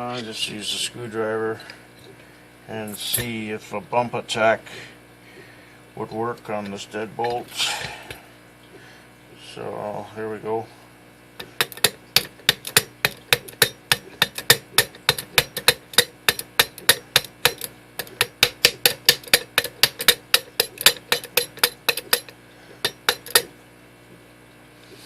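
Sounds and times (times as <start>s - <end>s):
screwdriver tapping a key in a lock: 11.6s - 23.5s.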